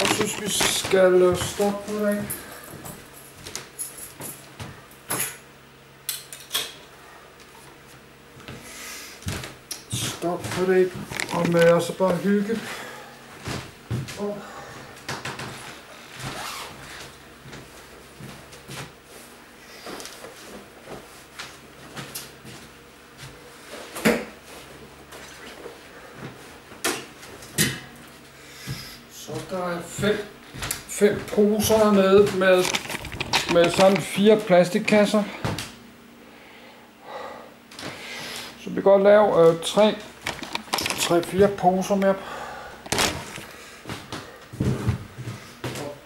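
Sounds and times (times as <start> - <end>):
household objects knocking and clattering: 0.0 - 1.5, 40.2 - 41.2
faint steady hum: 0.0 - 46.0.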